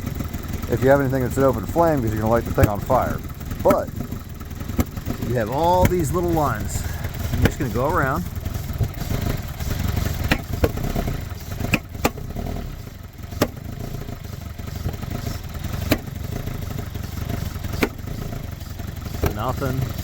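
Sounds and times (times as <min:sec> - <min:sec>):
car engine running rough: 0:00.0 - 0:20.0.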